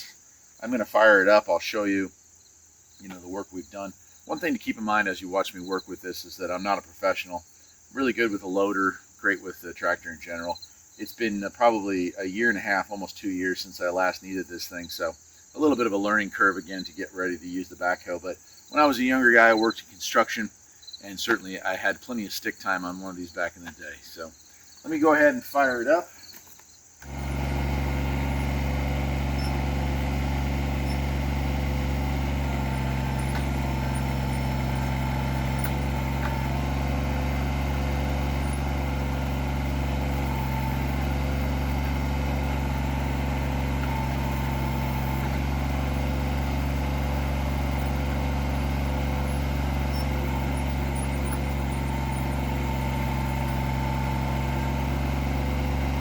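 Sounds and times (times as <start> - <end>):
diesel tractor engine running: 27.0 - 56.0.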